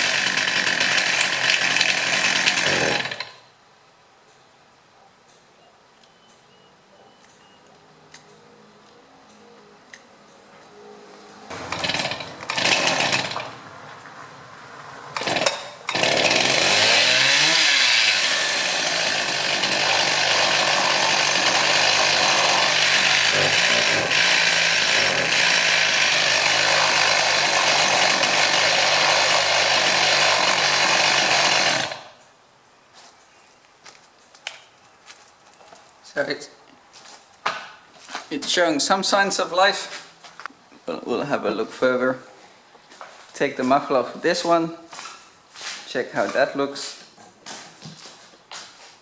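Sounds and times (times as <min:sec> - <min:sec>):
chainsaw starting and running: 0:00.0 - 0:03.5, 0:11.5 - 0:13.7, 0:15.1 - 0:32.2.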